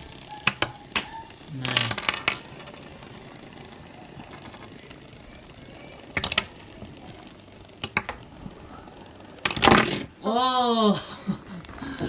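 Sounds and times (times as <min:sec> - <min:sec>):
sharp plastic clicks: 0:00.0 - 0:10.3
plastic figures clattering: 0:00.0 - 0:10.4, 0:11.0 - 0:12.0
fidget spinner spinning: 0:00.0 - 0:12.0.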